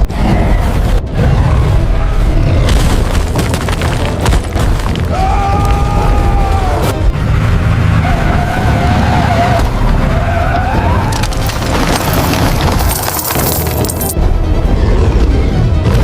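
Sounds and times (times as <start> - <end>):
low rumble: 0.0 - 8.4.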